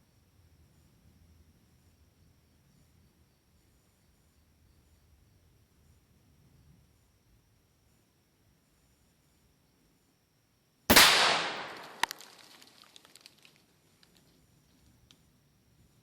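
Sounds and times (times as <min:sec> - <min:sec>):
revolver shot echoing: 0:10.9 - 0:12.3
short sharp crack: 0:10.9 - 0:13.3.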